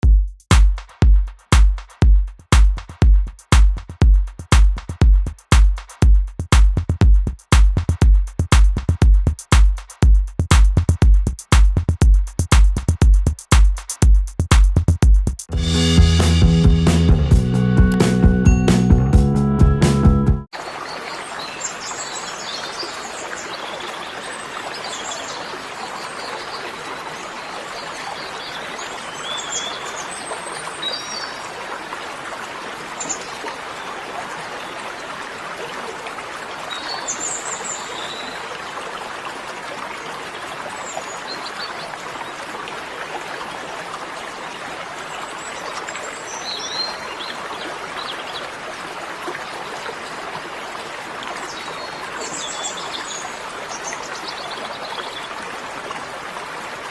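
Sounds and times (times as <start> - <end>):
running water: 20.5 - 56.9.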